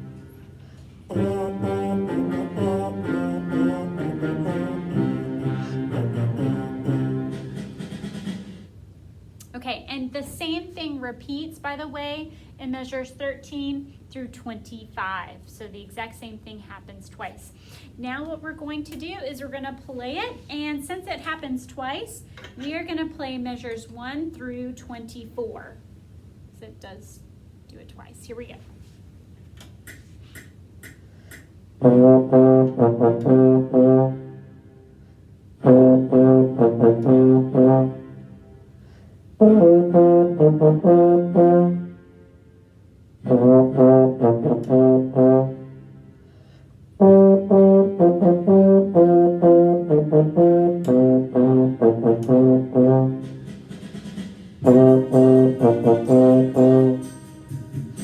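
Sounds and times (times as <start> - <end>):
low brass playing blues riff: 0.0 - 7.7, 31.8 - 34.8, 35.6 - 38.7, 39.4 - 42.4, 43.2 - 46.2, 47.0 - 53.5, 54.6 - 58.0.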